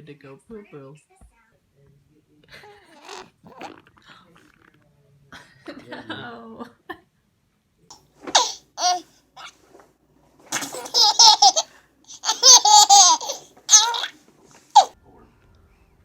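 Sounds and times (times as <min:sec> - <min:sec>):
baby laughing: 0:08.3 - 0:09.5, 0:10.6 - 0:15.0.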